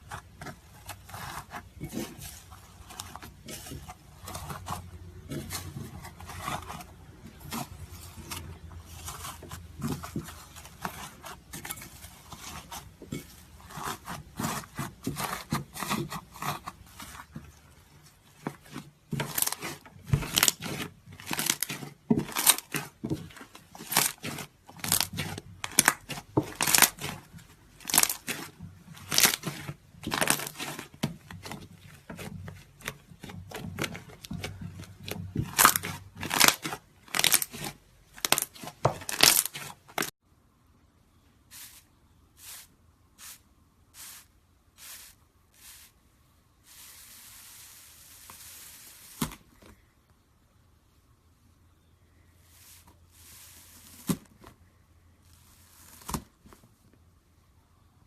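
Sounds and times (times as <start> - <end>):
slime crackling and crunching: 18.3 - 40.2.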